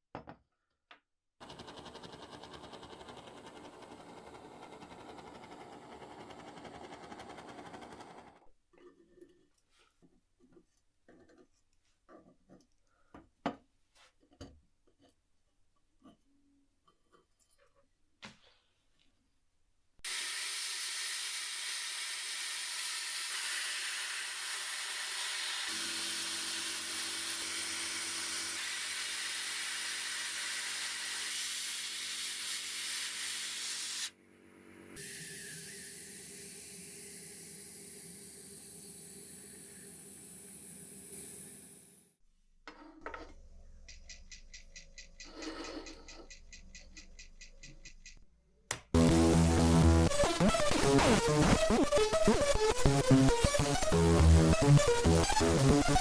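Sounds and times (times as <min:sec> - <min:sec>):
workshop tool hissing: 0:20.1 - 0:34.1, 0:35.0 - 0:42.0.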